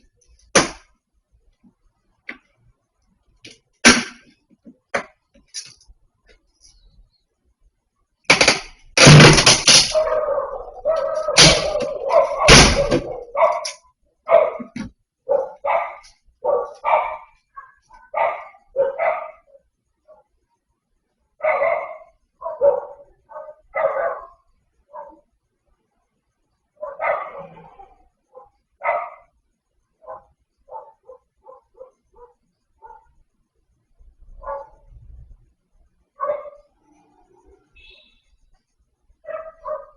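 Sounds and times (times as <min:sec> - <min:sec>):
dog barking: 0:09.9 - 0:20.3, 0:21.4 - 0:25.3, 0:26.8 - 0:29.4, 0:30.0 - 0:33.2, 0:34.4 - 0:35.0, 0:36.2 - 0:37.1, 0:39.2 - 0:39.9.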